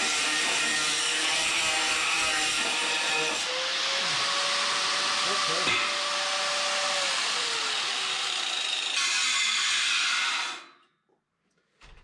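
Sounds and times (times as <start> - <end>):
angle grinder cutting: 0.0 - 10.7.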